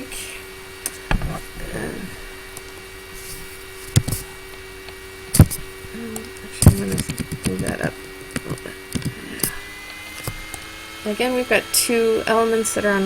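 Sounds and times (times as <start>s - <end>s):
laptop fan humming: 0.0s - 13.0s
clicks and knocks on laptop: 5.4s - 5.7s.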